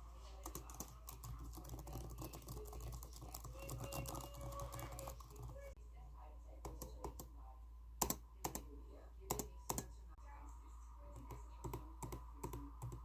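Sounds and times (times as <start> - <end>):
keyboard typing: 0.3 - 5.8, 8.0 - 8.7, 9.3 - 9.9, 11.2 - 13.0.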